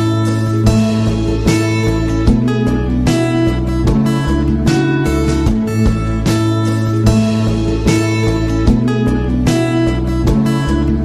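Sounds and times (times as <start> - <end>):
strummed acoustic guitar: 0.0 - 11.0.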